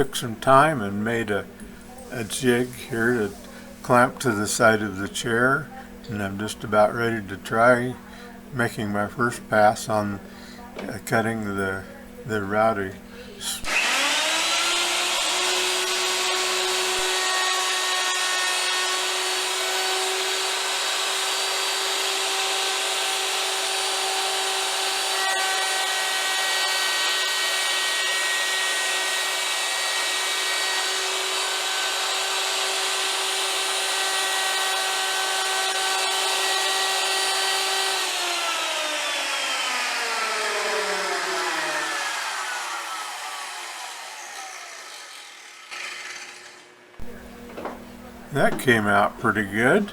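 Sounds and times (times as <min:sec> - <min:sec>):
electric router whining: 0:13.4 - 0:48.6
router winding down: 0:13.6 - 0:47.3.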